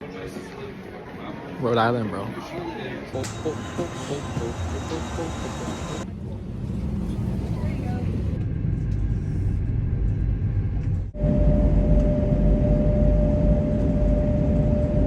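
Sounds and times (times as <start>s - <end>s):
steady high hum: 3.1s - 6.1s, 8.9s - 15.0s
vehicle rumble: 3.3s - 15.0s.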